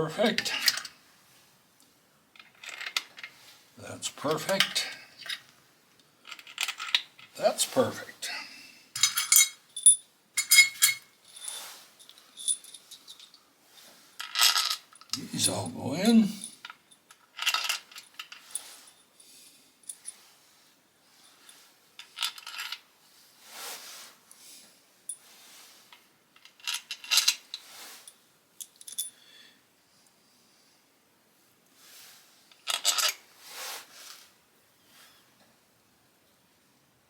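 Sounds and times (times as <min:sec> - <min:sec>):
metal parts clinking: 0:00.4 - 0:00.9, 0:02.4 - 0:03.3, 0:06.2 - 0:07.3, 0:09.0 - 0:13.4, 0:22.0 - 0:22.8, 0:26.4 - 0:27.6, 0:32.6 - 0:33.2.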